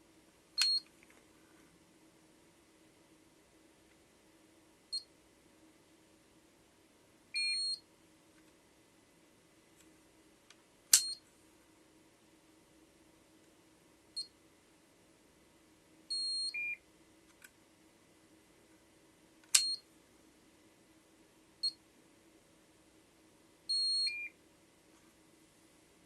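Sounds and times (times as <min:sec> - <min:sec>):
meter beeping: 0:07.4 - 0:07.8, 0:16.1 - 0:16.8, 0:19.6 - 0:19.8, 0:23.7 - 0:24.3
sharp click: 0:10.9 - 0:11.2, 0:19.4 - 0:19.8.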